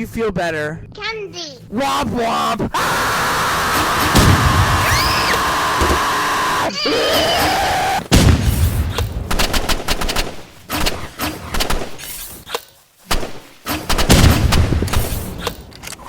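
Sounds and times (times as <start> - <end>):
sharp bangs and cracks: 2.8 - 6.7, 7.4 - 15.8.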